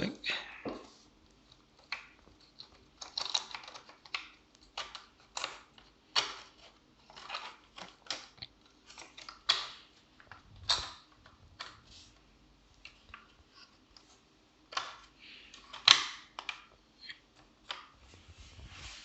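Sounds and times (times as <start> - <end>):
laptop parts clicking into place: 14.7 - 16.7.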